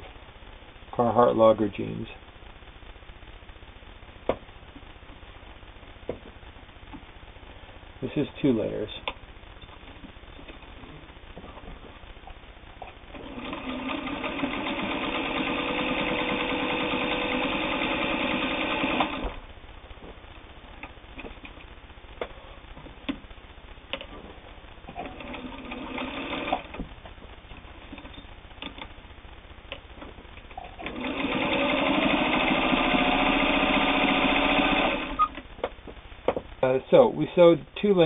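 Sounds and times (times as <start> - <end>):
sewing machine stitching: 13.1 - 19.4, 25.0 - 26.8, 30.6 - 35.4.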